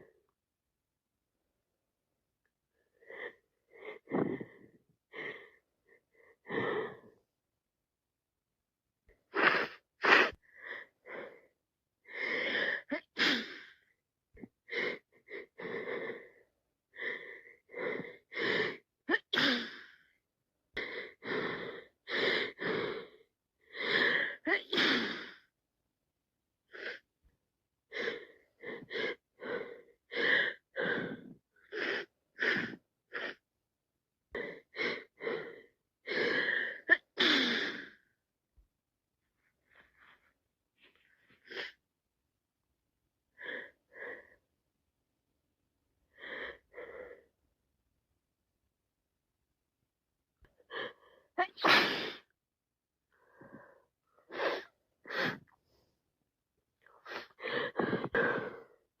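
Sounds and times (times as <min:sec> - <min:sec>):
person sneezing: 0:51.4 - 0:52.3.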